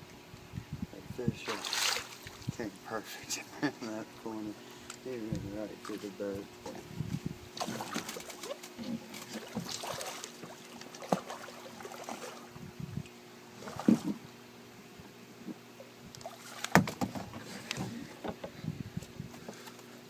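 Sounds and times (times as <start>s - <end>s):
steady low hum: 0.0s - 20.0s
splashy rustles: 1.5s - 2.5s, 7.6s - 12.5s
knocks in boat: 13.8s - 14.2s, 16.7s - 18.6s.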